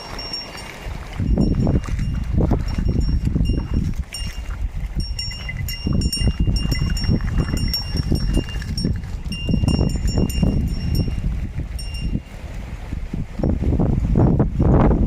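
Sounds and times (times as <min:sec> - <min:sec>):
small bells clinking: 0:00.0 - 0:11.2, 0:11.8 - 0:12.2
wind rumble on microphone: 0:00.0 - 0:15.0.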